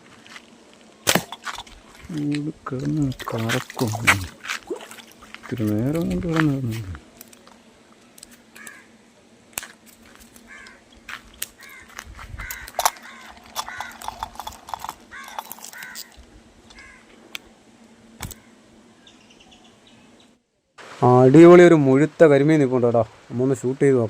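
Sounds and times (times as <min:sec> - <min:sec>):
faint steady hum: 0:00.0 - 0:24.0
bird calling: 0:08.5 - 0:09.0, 0:10.4 - 0:17.2, 0:18.2 - 0:20.4.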